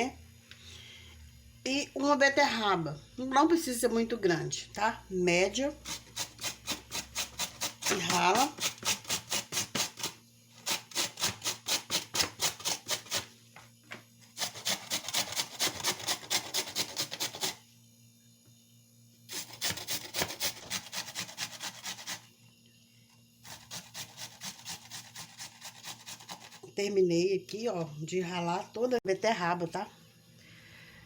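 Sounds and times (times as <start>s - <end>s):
beet grating on grater: 5.7s - 13.3s, 14.3s - 17.6s, 19.3s - 22.3s, 23.4s - 26.7s.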